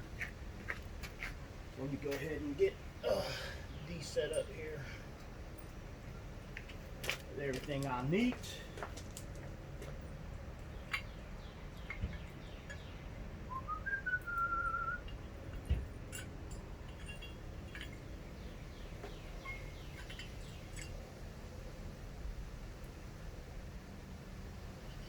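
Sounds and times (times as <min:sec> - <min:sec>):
faint high chirps: 0:10.9 - 0:15.2
rising whistle: 0:13.5 - 0:15.0.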